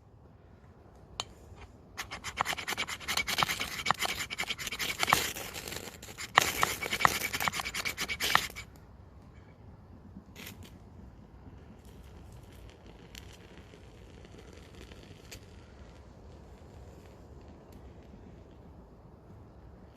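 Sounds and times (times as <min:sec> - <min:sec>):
fire striker scraping: 0:01.2 - 0:08.7.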